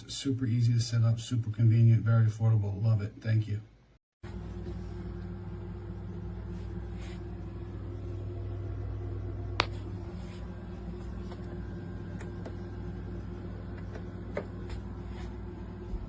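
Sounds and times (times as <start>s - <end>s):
steady low hum: 4.2s - 16.0s.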